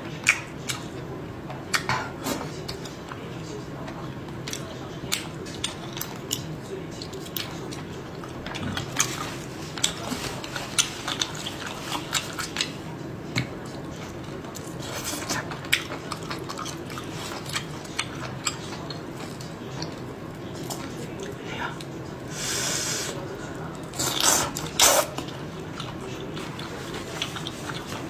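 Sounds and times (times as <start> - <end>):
chewing and biting: 4.5 - 12.8, 13.4 - 21.9, 23.8 - 28.0.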